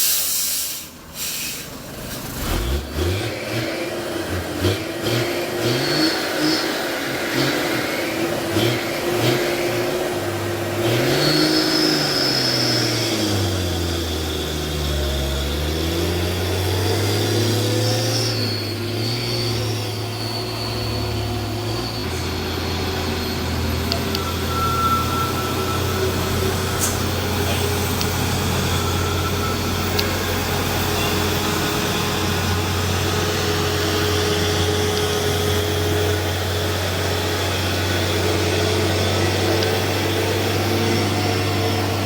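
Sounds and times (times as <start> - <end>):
truck diesel engine labouring: 0.0 - 42.0
thin high whine: 17.4 - 42.0.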